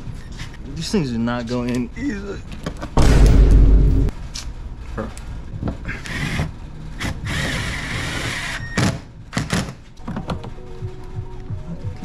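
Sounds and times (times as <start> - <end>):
background music: 10.0 - 12.0.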